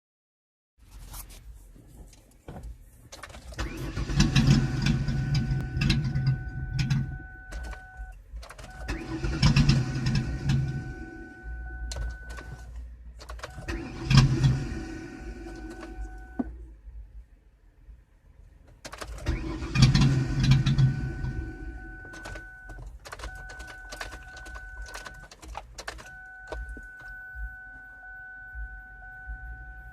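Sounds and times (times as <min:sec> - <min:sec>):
car starter cranking engine: 0:03.1 - 0:16.6, 0:18.7 - 0:27.2.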